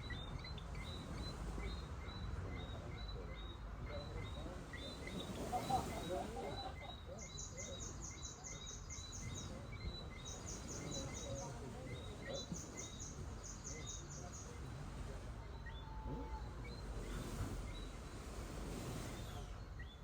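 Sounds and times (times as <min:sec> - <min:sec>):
sea wash: 0:04.0 - 0:06.8, 0:14.0 - 0:20.0.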